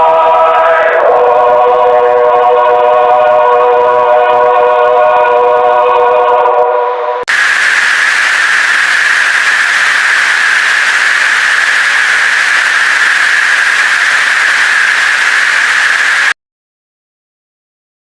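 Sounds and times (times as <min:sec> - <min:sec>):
loud static hiss: 0:07.3 - 0:16.4.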